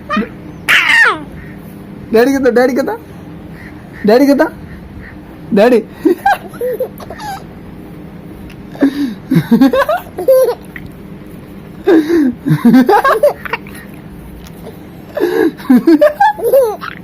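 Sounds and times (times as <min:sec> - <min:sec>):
toddler vocalising: 0:00.1 - 0:01.4.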